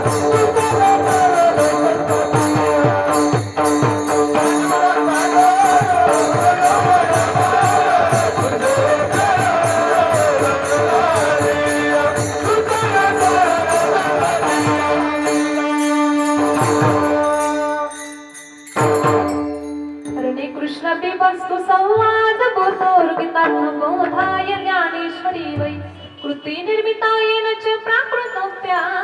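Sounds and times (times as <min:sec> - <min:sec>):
drum beats: 0:00.0 - 0:20.2
jingling cymbals: 0:00.0 - 0:20.9, 0:27.6 - 0:29.0
wavering melody: 0:00.0 - 0:20.9.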